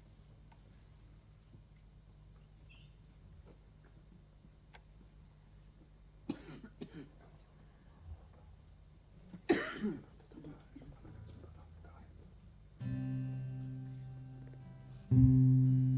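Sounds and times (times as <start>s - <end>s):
person coughing: 6.3s - 7.2s, 9.5s - 10.1s.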